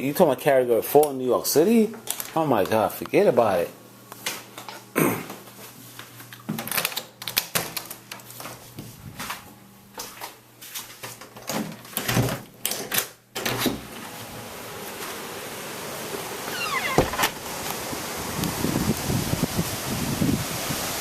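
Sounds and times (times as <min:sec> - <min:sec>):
steady hiss: 0:13.8 - 0:21.0.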